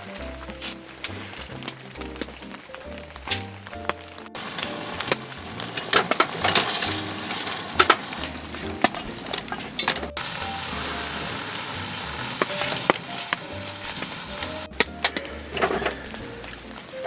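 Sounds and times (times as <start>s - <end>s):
background music with bass line: 0.0s - 17.0s
food sizzling in a pan: 4.4s - 14.7s.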